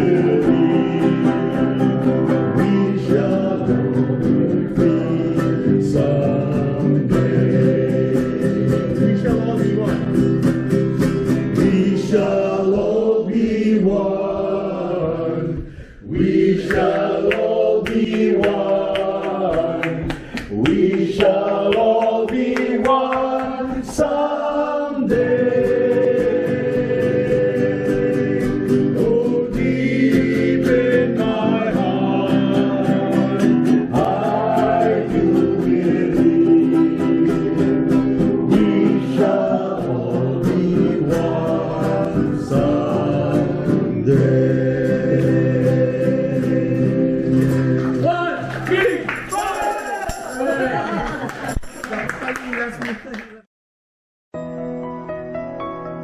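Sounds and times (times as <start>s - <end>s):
strummed guitar: 0.0s - 12.6s, 25.1s - 48.1s
group singing a hymn: 0.0s - 48.1s.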